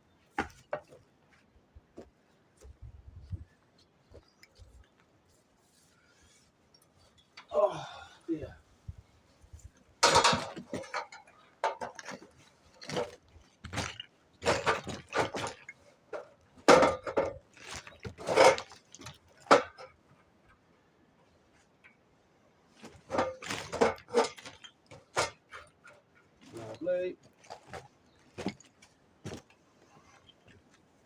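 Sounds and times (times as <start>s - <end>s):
masonry rubble clattering: 10.0s - 20.0s, 22.8s - 29.5s.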